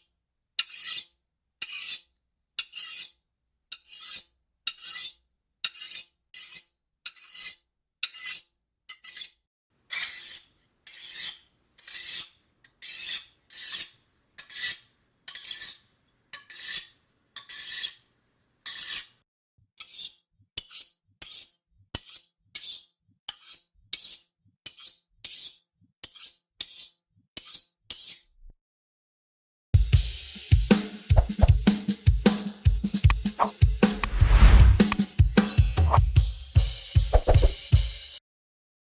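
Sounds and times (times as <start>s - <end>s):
knife being sharpened: 0.6s - 18.0s, 18.6s - 19.1s, 19.8s - 28.5s, 33.4s - 35.0s, 37.2s - 37.5s.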